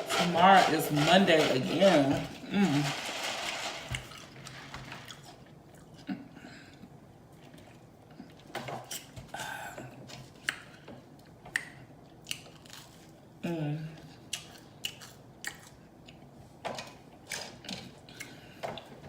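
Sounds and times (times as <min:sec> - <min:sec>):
lip smacks: 0:11.5 - 0:12.5.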